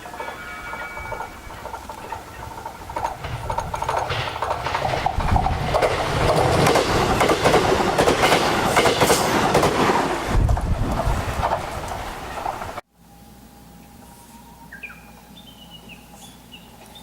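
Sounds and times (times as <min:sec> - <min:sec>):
train passing rumble: 0:00.0 - 0:12.8
train wheels clacking: 0:00.0 - 0:12.8.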